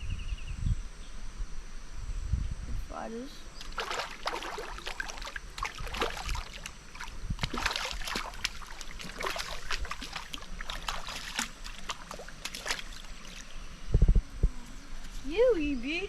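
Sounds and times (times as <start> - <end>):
water splashing and sloshing: 3.6 - 13.7.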